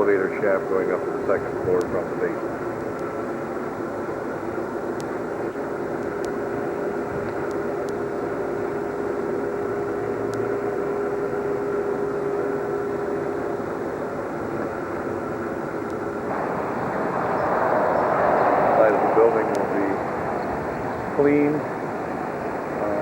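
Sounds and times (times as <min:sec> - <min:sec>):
steady hum: 0:00.0 - 0:23.0
steady mechanical drone: 0:00.0 - 0:23.0.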